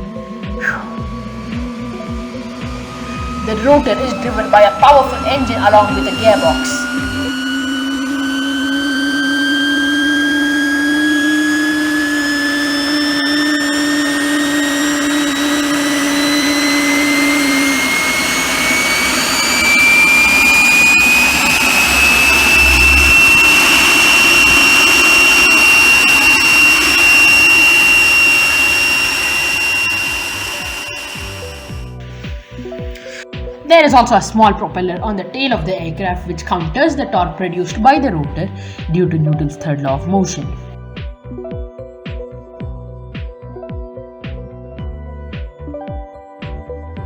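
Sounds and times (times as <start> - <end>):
rushing noise: 0.0 - 33.2
low steady hum: 0.0 - 40.8
helicopter engine whine rising: 0.0 - 42.7.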